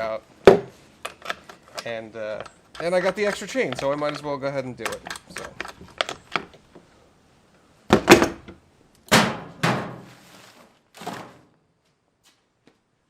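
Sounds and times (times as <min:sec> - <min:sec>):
loud thuds: 0:07.9 - 0:10.2.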